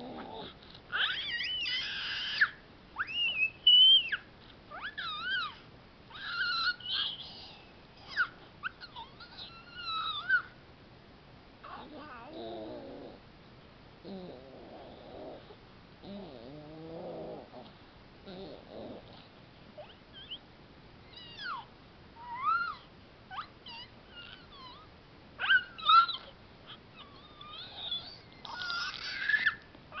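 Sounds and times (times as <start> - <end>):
baby squealing: 1.0 - 10.5, 21.1 - 24.8, 25.4 - 30.0
baby murmuring: 11.6 - 13.2, 25.9 - 30.0.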